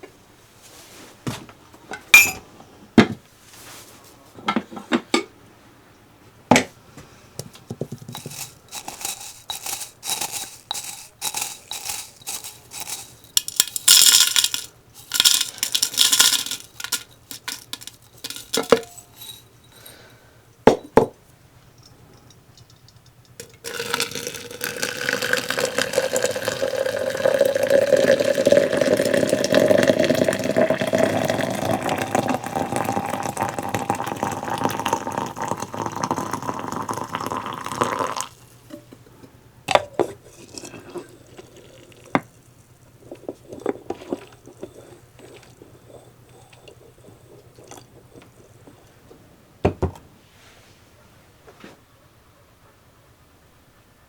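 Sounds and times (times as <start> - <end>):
short knocks and clinks: 2.0 - 2.5, 7.8 - 20.0
water running into a container: 8.1 - 18.7, 23.4 - 38.5.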